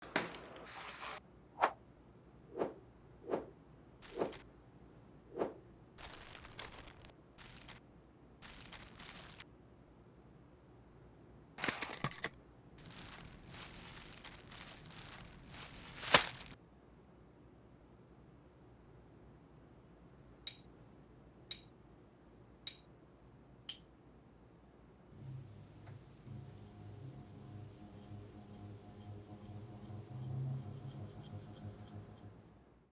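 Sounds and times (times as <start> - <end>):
packaging crinkling and rustling: 6.0 - 7.8, 8.4 - 9.4, 11.6 - 16.6.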